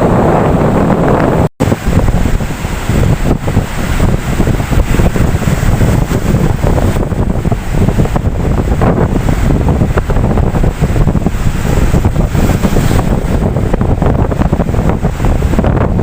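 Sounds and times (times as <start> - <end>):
ocean surf washing in: 0.0 - 16.0
wind buffeting microphone: 0.0 - 16.0.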